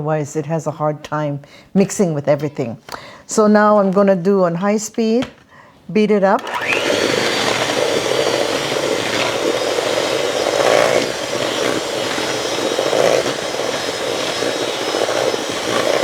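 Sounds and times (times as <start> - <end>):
electric mixer whirring: 6.4 - 16.0.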